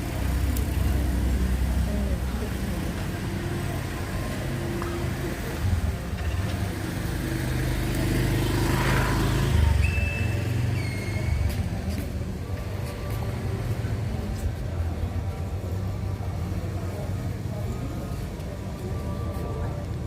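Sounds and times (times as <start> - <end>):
road traffic: 0.0 - 20.0
vehicle passing: 6.6 - 11.8.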